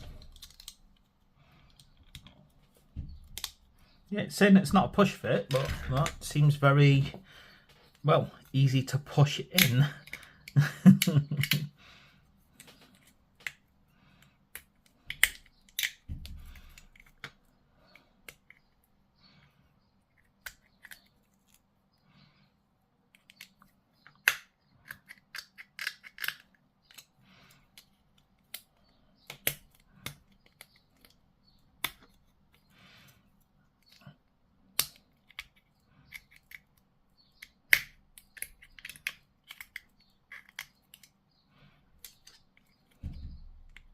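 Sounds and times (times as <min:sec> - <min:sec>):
plastic parts clicking together: 0:00.0 - 0:03.7, 0:09.4 - 0:11.7, 0:12.5 - 0:18.9, 0:23.1 - 0:32.7, 0:33.8 - 0:41.3, 0:42.0 - 0:43.9
plastic parts scraping: 0:00.0 - 0:04.1, 0:05.0 - 0:11.7.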